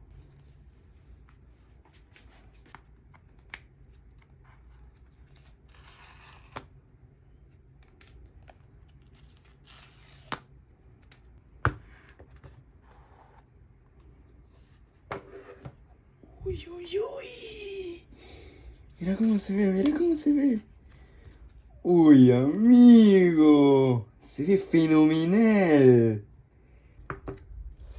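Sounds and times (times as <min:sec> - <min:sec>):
paper seal strips tearing: 0:08.9 - 0:10.5.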